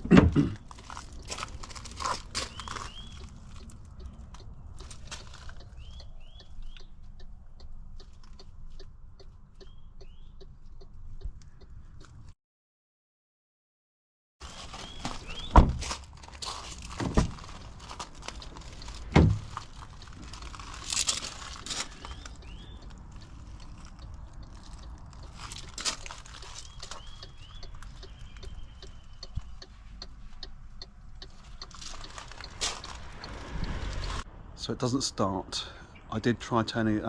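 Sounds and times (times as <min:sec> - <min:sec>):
heavy thumps: 0:18.9 - 0:19.6.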